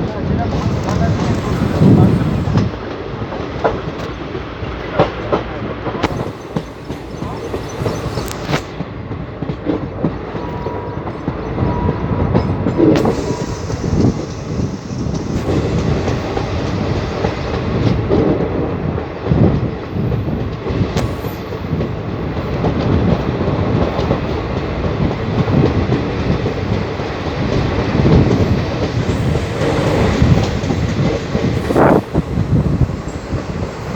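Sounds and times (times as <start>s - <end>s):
train rumbling on rails: 0.0s - 33.9s.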